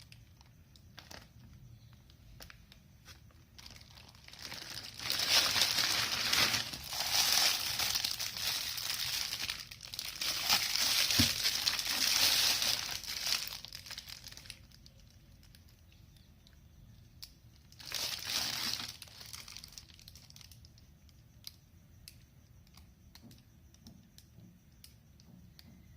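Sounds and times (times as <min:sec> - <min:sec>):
packaging crinkling: 0:00.0 - 0:15.6, 0:17.6 - 0:20.7.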